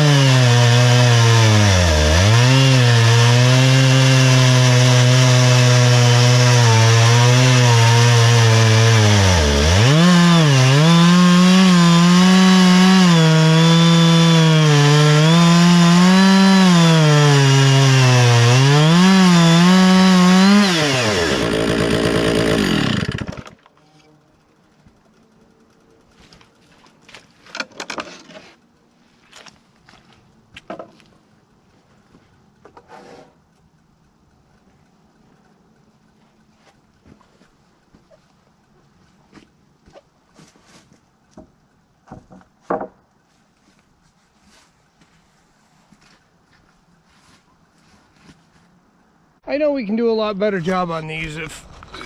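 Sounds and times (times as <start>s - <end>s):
chainsaw ripping through log: 0.0s - 23.6s.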